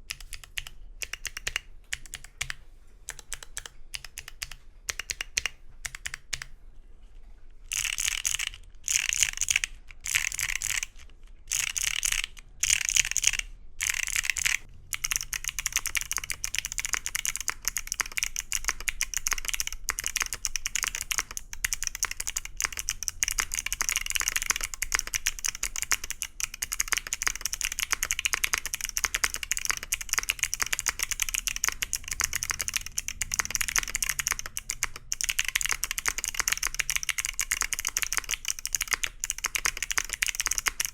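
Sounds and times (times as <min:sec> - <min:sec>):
clicky keyboard typing: 0:00.0 - 0:06.5, 0:07.7 - 0:40.9.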